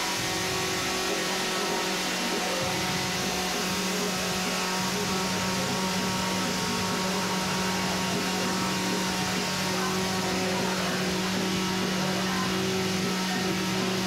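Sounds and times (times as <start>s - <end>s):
chainsaw running at high speed: 0.0s - 14.0s.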